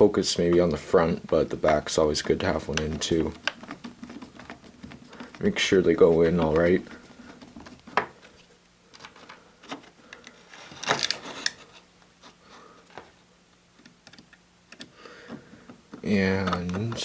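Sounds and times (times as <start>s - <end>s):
screwdriver clicking and scraping: 9.0s - 11.8s.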